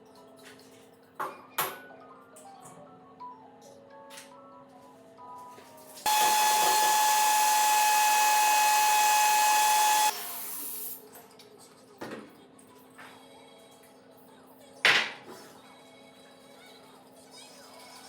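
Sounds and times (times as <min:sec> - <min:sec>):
small electric appliance whine: 0:06.0 - 0:10.9
loud hiss: 0:06.1 - 0:10.9.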